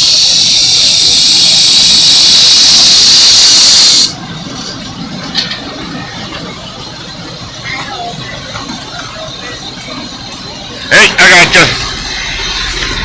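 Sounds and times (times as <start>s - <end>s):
loud steady hiss: 0.0s - 4.2s.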